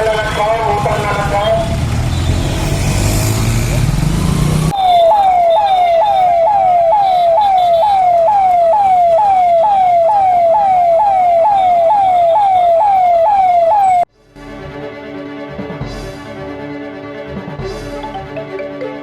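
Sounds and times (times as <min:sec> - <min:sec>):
electronic siren: 0:04.7 - 0:14.1.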